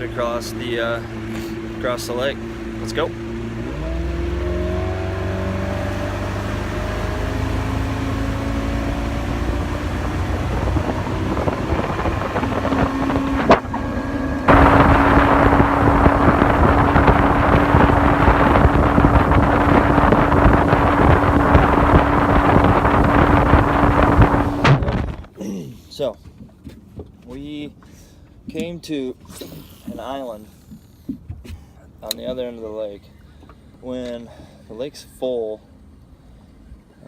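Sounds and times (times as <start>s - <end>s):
boat motor accelerating: 0.0s - 25.3s
rush of wind and water: 0.0s - 25.4s.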